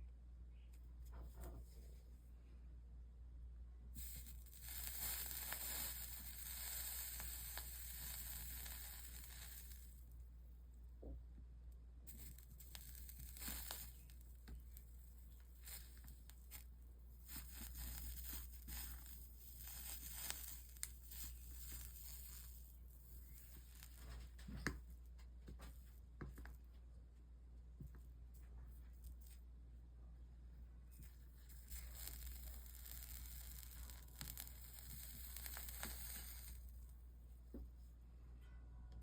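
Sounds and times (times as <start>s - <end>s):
soldering iron sizzling: 4.0s - 10.2s, 12.1s - 24.3s, 31.0s - 36.9s.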